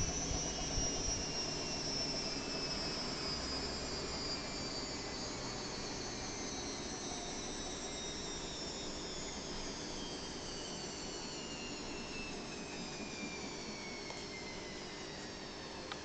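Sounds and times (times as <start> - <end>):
high whining tones falling in pitch: 0.0 - 16.0.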